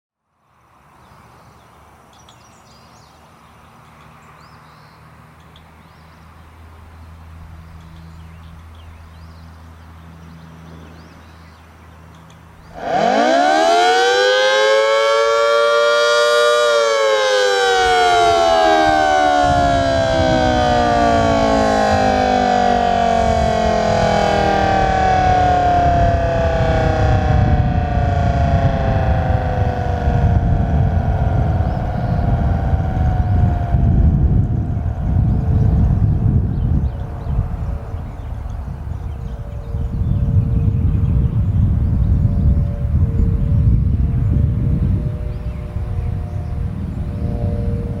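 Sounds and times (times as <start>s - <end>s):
low rumbling noise: 6.6s - 48.0s
warning siren winding up and down: 12.7s - 48.0s.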